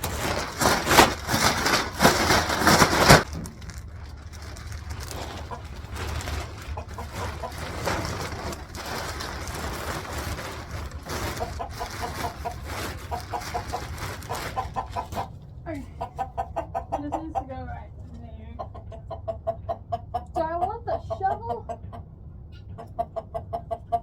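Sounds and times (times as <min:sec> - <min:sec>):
loud rustling: 0:00.0 - 0:15.3
chickens clucking: 0:00.0 - 0:24.0.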